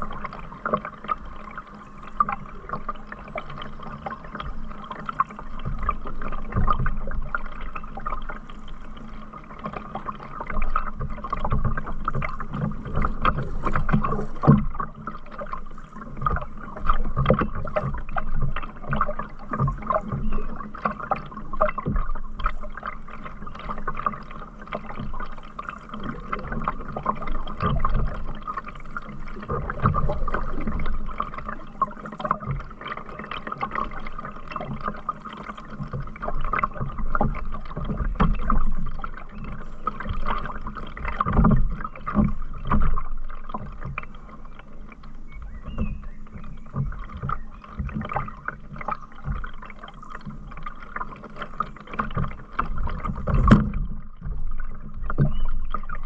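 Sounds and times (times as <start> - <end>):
paddle strokes splashing water: 0.0 - 56.0
low knocks on canoe hull: 52.2 - 55.7.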